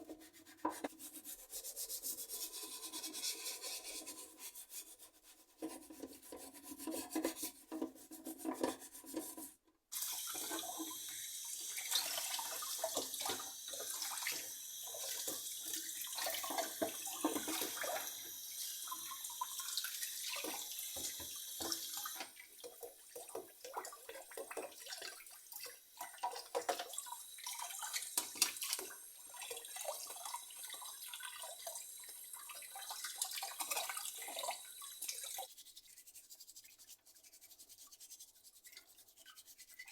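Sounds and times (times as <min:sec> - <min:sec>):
tap water running into sink: 0:05.6 - 0:35.5.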